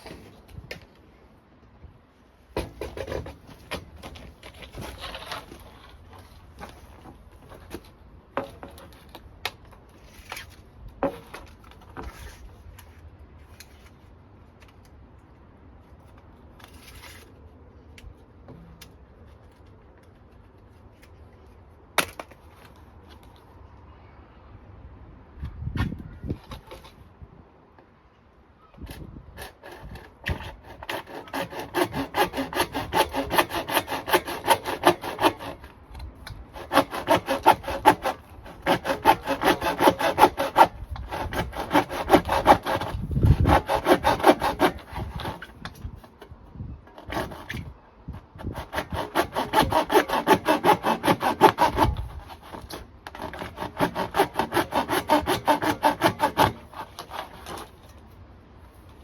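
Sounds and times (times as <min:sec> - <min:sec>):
saw cutting through a pipe: 0:28.9 - 0:46.2, 0:46.9 - 0:58.0.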